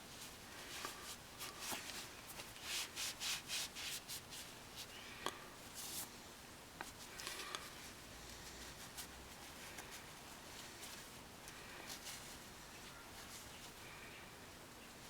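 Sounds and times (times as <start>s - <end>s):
hand rubbing strokes: 0.1s - 5.0s.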